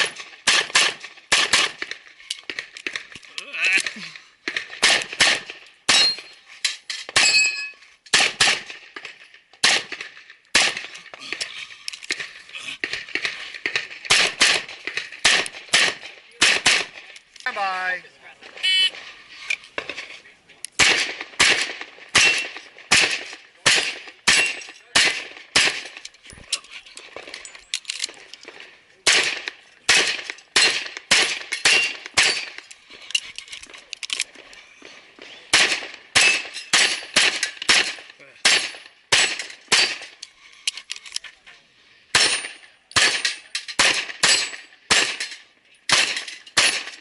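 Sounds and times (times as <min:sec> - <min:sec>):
pistol shots: 0:00.0 - 0:03.1, 0:04.5 - 0:06.3, 0:08.1 - 0:11.0, 0:12.8 - 0:17.1, 0:20.8 - 0:26.1, 0:28.4 - 0:32.6, 0:35.2 - 0:40.2, 0:42.1 - 0:45.3, 0:45.9 - 0:47.0.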